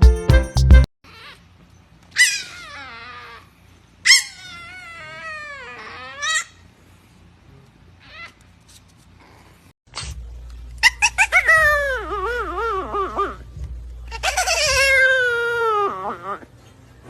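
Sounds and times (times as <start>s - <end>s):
music: 0.0s - 0.9s
dog whining: 1.1s - 1.5s, 2.1s - 6.7s, 8.0s - 8.6s, 10.8s - 16.7s.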